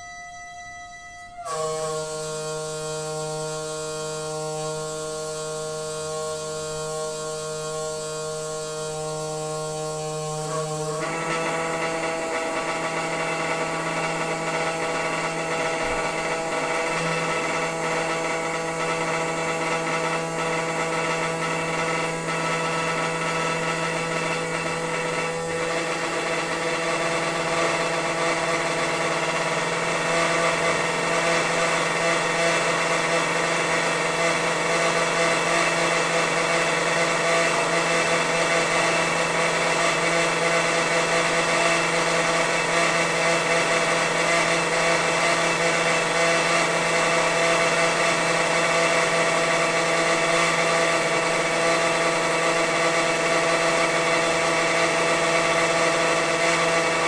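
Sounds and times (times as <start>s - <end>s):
water pipes humming: 8.9s - 36.9s.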